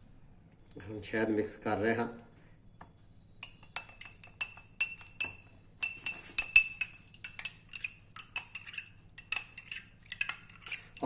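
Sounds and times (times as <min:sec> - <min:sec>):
metal spoon clinking against glass: 0:03.4 - 0:11.0.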